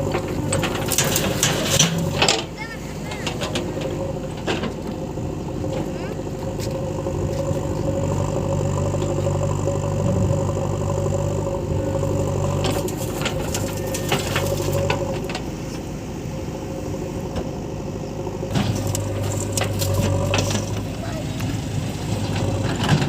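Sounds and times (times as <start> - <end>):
clattering knocks: 0.0 - 11.4, 18.5 - 23.0
diesel engine running: 0.0 - 23.0.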